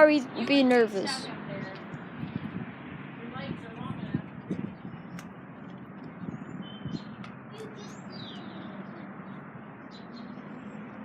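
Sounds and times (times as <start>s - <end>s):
small birds chirping: 4.5s - 11.0s.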